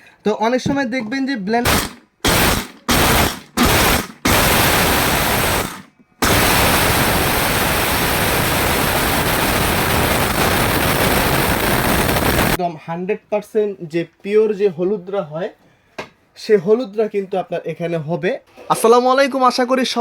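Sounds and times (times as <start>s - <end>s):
mixer grinder motor grinding: 1.7s - 12.6s.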